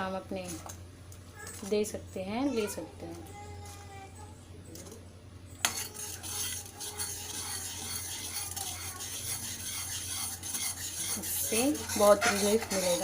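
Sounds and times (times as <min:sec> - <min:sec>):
spoon scraping in a pot: 0:05.6 - 0:13.0.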